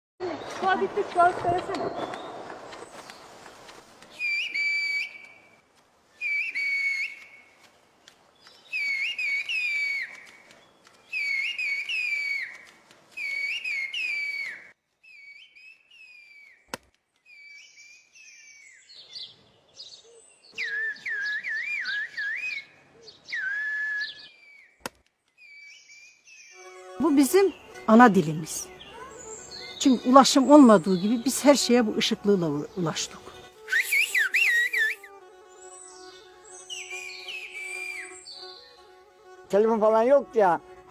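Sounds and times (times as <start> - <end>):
person whistling sliding phrases: 4.2 - 5.5, 6.2 - 7.5, 8.7 - 10.4, 11.1 - 12.6, 13.2 - 16.6, 20.6 - 22.7, 23.3 - 24.7, 33.7 - 35.1, 36.7 - 38.2.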